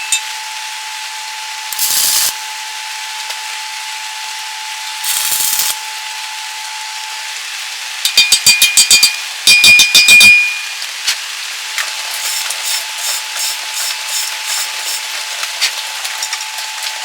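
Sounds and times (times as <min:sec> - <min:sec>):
hissing scrapes on steel: 0:12.1 - 0:15.0.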